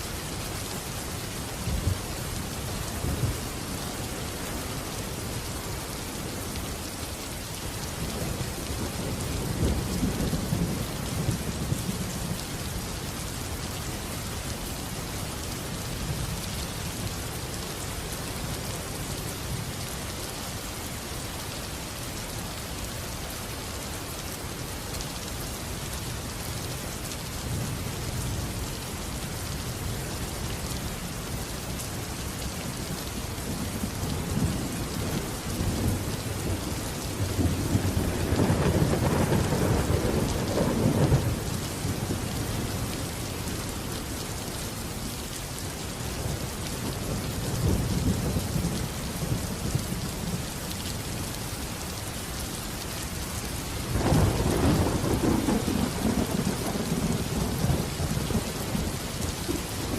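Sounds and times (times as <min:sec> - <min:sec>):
heavy rain: 0:00.0 - 0:59.9
thunder rumble: 0:37.2 - 0:41.4.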